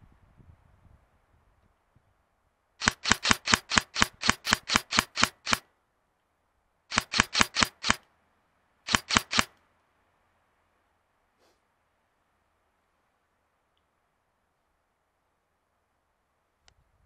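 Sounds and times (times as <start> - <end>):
airsoft gun firing single shots: 2.8 - 5.6, 6.9 - 8.0, 8.9 - 9.6.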